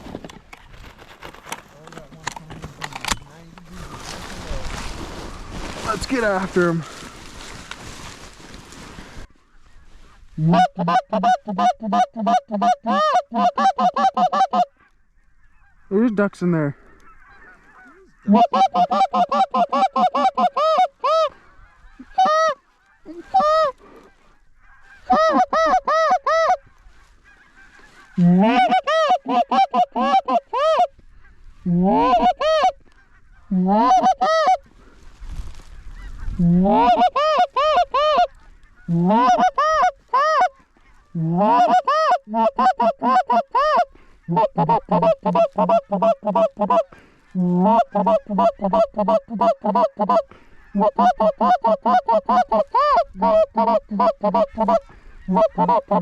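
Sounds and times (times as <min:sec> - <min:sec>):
goose call clucks and honks: 0:10.4 - 0:34.7, 0:35.6 - 0:56.0.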